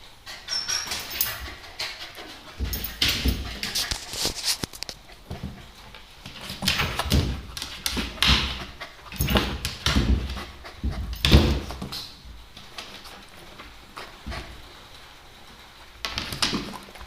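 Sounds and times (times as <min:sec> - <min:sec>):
dog knocks and scuffs: 0:02.5 - 0:13.1.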